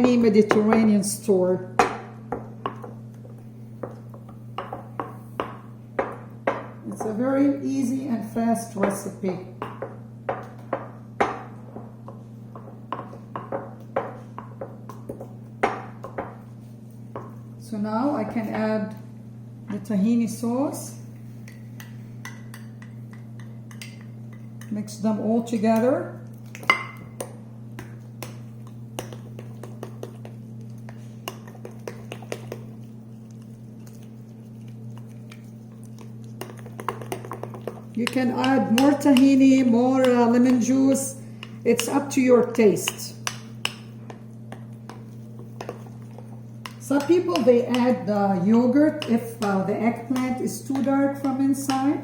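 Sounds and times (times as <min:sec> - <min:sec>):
utensil tapping a bowl: 0:00.0 - 0:01.0, 0:01.8 - 0:07.2, 0:26.6 - 0:32.8, 0:33.8 - 0:48.1, 0:48.8 - 0:52.0
steady low hum: 0:00.0 - 0:52.0.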